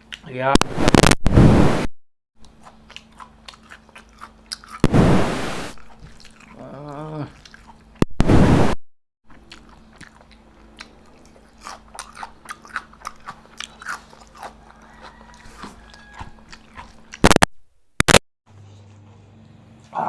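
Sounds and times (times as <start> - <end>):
chewing with wet mouth clicks: 0.0 - 0.3, 2.4 - 4.9, 5.8 - 8.0, 9.3 - 17.4
loud crunching bites: 9.4 - 18.2.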